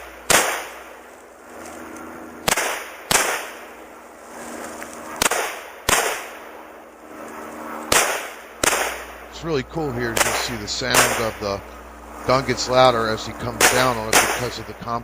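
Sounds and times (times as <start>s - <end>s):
rifle shots with echo: 0.0s - 1.0s, 2.4s - 3.7s, 5.2s - 6.6s, 7.9s - 9.3s, 10.1s - 11.5s, 13.6s - 14.8s.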